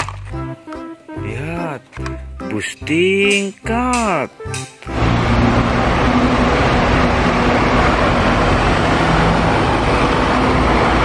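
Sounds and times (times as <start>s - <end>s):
road noise: 0.0s - 11.0s
bus engine rumble: 3.6s - 11.0s.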